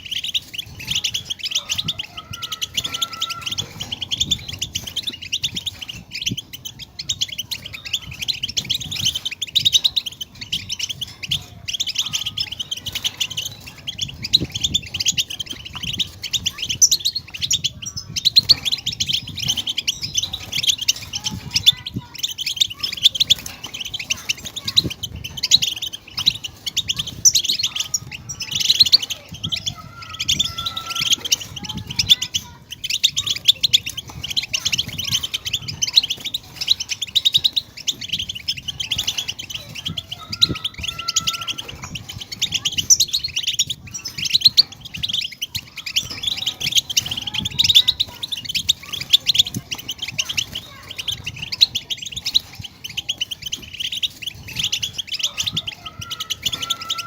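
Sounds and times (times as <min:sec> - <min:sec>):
birds twittering and trilling: 0:00.0 - 0:57.0.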